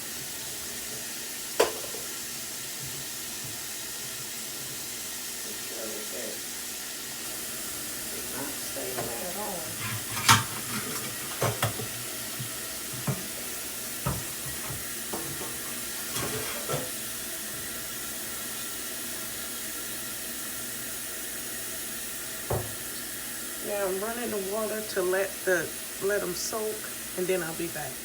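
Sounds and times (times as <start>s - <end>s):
tap running into sink: 0.1s - 5.0s, 8.8s - 17.8s, 22.4s - 23.2s
metal parts clanking in sink: 9.7s - 11.9s, 14.2s - 17.0s.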